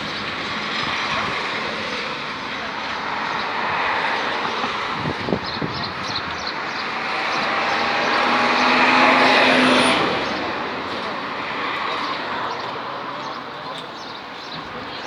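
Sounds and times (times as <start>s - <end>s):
vehicle driving past: 3.0s - 12.1s.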